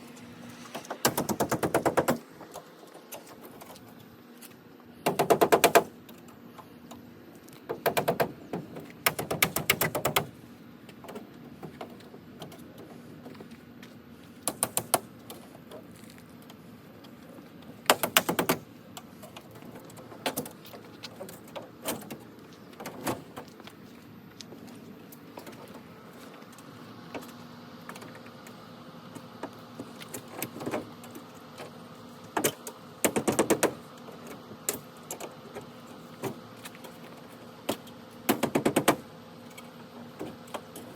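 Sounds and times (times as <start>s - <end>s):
rapid mechanical clicking: 0.7s - 3.8s, 5.0s - 6.3s, 7.7s - 10.4s, 14.4s - 15.4s, 17.8s - 22.2s, 32.3s - 37.1s, 37.7s - 40.9s.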